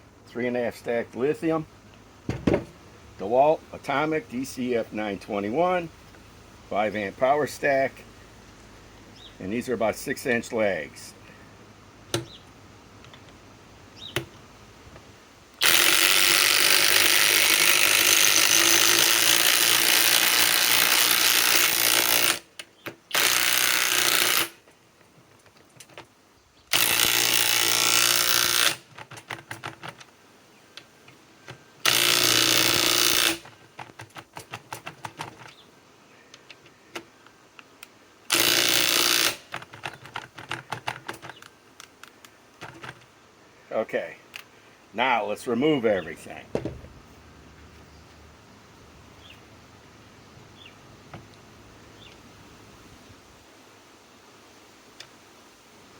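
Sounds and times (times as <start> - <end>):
impact wrench hammering: 2.3 - 2.7.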